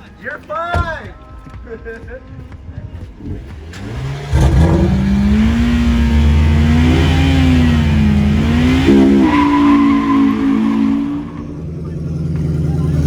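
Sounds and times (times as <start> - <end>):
car engine revving hard: 3.2 - 13.0.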